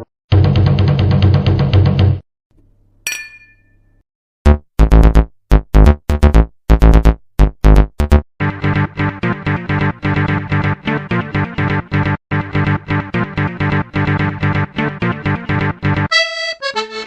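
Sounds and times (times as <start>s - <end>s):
metallic chime hit: 3.1s - 4.0s
punchy bass synth stabs: 4.5s - 8.2s.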